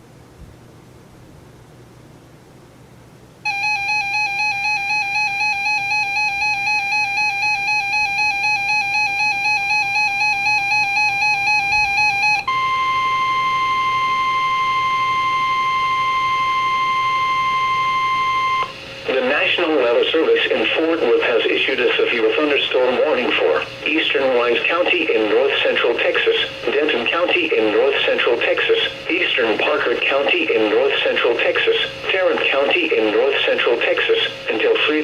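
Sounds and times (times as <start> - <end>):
steady high alarm tone: 3.4 - 34.8
static hiss: 18.6 - 35.0.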